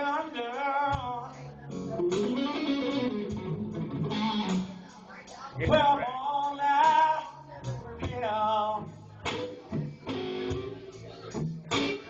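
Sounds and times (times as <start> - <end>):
strummed guitar: 0.0 - 12.0
lead guitar bent notes: 1.7 - 5.0, 8.7 - 12.0.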